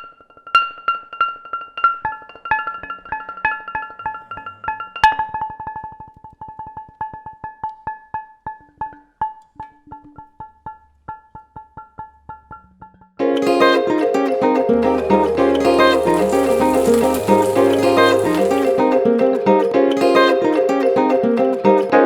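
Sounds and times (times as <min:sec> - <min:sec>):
full musical arrangement: 0:13.2 - 0:22.0
low held notes: 0:13.3 - 0:22.0.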